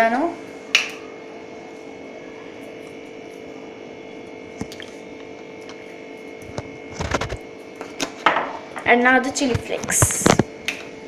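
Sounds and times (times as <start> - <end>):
steady background hum: 0.0 - 11.0.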